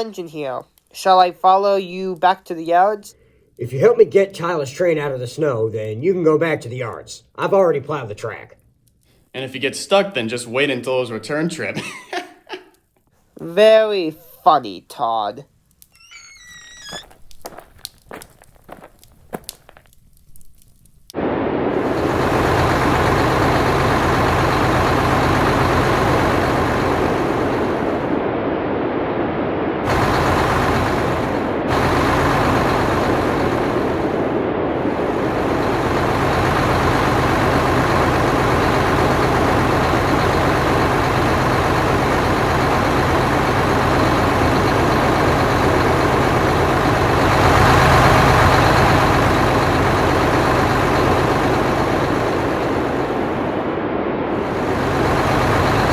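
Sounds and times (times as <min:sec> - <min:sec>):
locomotive engine humming: 0:21.8 - 0:28.4, 0:29.8 - 0:55.9.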